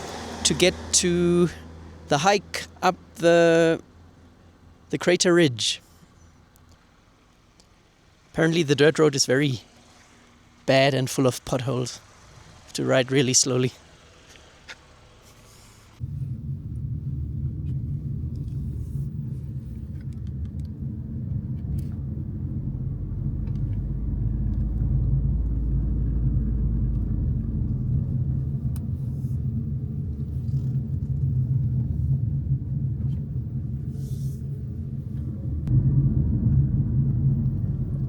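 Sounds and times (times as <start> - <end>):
car rumbling over rough road: 11.4 - 38.0.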